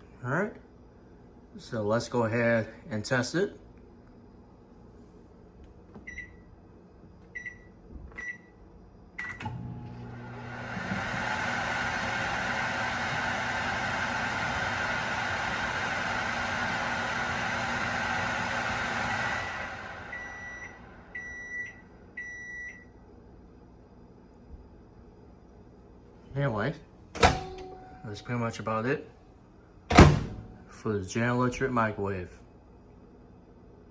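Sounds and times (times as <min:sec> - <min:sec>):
microwave hum: 0:00.3 - 0:33.9
microwave end beeps: 0:06.0 - 0:06.5, 0:07.3 - 0:08.6, 0:09.2 - 0:10.4, 0:19.0 - 0:23.0, 0:27.2 - 0:28.2
microwave fan whoosh: 0:09.4 - 0:21.1.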